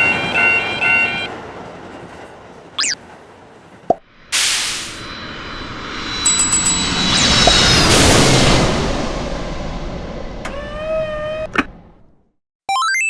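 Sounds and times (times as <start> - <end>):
railroad crossing bell clanging: 0.0 - 1.4, 6.0 - 8.3
train rumble: 0.0 - 12.3
rushing noise: 4.0 - 10.4.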